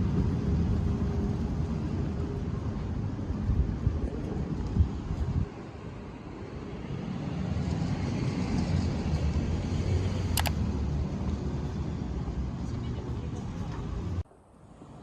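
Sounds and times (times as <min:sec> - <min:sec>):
road traffic rumble: 0:00.0 - 0:15.0
sharp clicks: 0:10.3 - 0:10.6.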